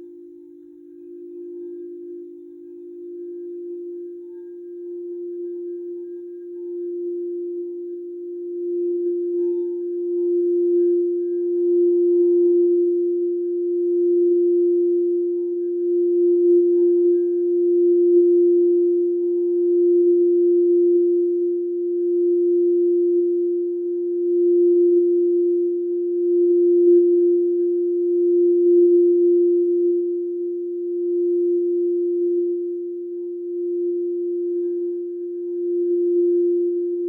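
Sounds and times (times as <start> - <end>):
singing bowl tone: 0.0 - 37.0.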